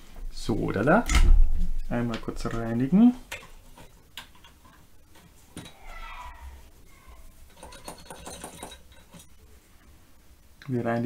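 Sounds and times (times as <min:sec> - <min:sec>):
small tools clicking: 0:07.4 - 0:09.3.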